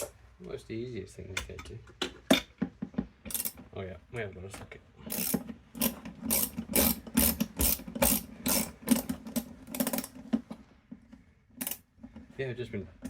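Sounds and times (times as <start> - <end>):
ratchet wrench clicking: 3.3 - 3.6, 5.1 - 10.1, 11.6 - 11.8.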